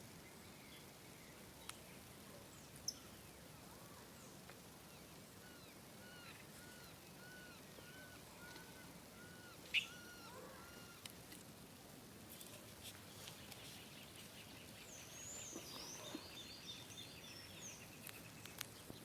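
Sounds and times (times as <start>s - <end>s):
birds chirping: 5.0s - 11.1s, 13.0s - 19.0s.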